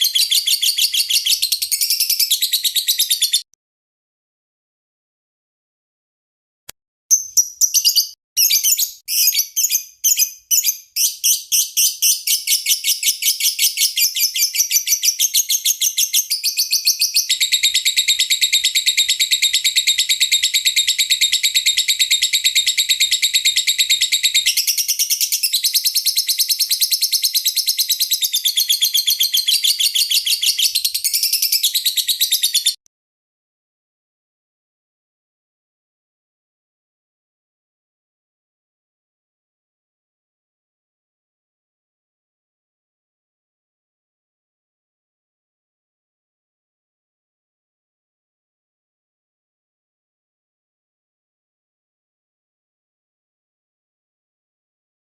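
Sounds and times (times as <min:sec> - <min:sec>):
lovebird chirping: 0:00.0 - 0:03.5, 0:07.1 - 0:32.8.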